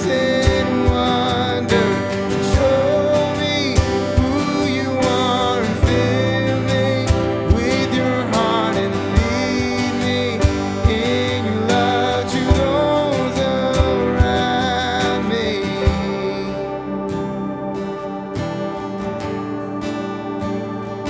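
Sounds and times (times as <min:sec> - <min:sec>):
acoustic guitar: 0:00.0 - 0:21.0
steady drum beat: 0:00.4 - 0:14.8.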